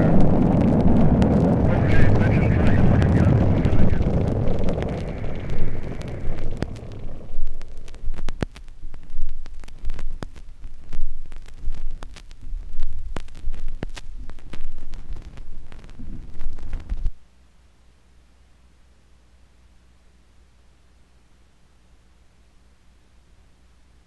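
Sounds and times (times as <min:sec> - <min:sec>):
low throbbing pulse: 0:00.0 - 0:17.1
vinyl surface crackle and clicks: 0:00.0 - 0:17.2
faint hiss and hum: 0:00.0 - 0:24.0.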